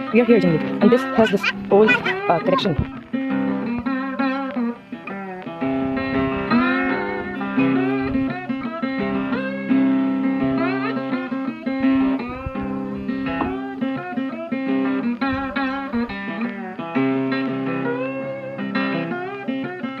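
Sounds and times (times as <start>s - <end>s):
plucked guitar melody: 0.0s - 20.0s.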